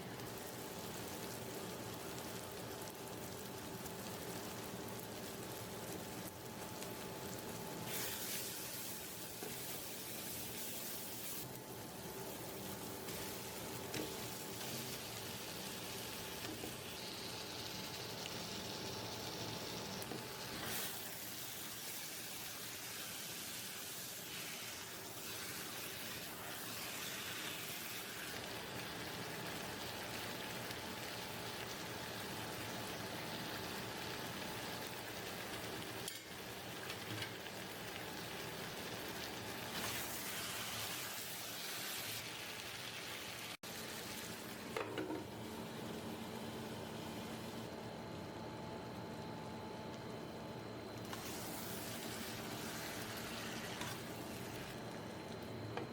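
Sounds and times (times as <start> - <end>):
food sizzling in a pan: 0.0 - 47.8, 51.0 - 55.9.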